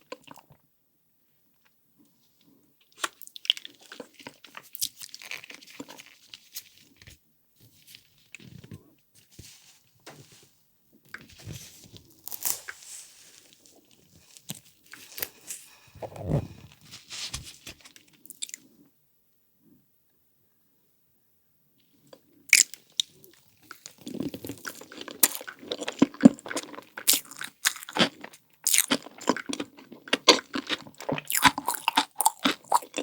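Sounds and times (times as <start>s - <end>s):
crunchy bites and chewing: 12.1s - 12.8s, 14.4s - 18.6s, 23.7s - 33.0s.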